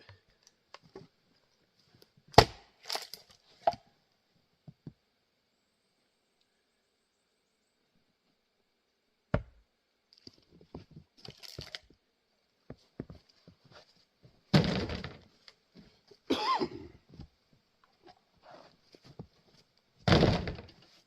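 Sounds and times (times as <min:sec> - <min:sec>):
log splitting crack: 0:02.3 - 0:03.4, 0:11.2 - 0:11.8
axe striking wood: 0:02.4 - 0:02.7.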